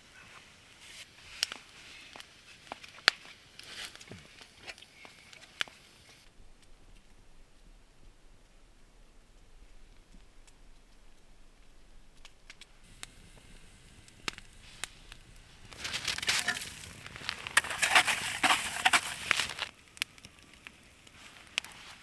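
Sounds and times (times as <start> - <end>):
campfire popping and crackling: 10.4 - 22.0.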